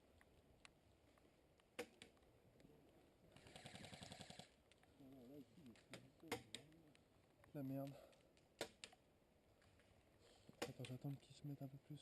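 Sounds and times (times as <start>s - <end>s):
airsoft gun full-auto burst: 3.4s - 4.5s.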